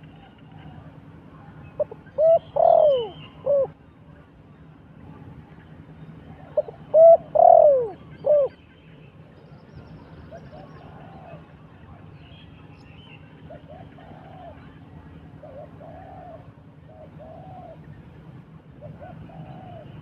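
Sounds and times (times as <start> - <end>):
dove cooing: 1.7 - 3.8, 6.4 - 8.6, 10.3 - 11.6, 13.5 - 18.0, 18.8 - 20.0.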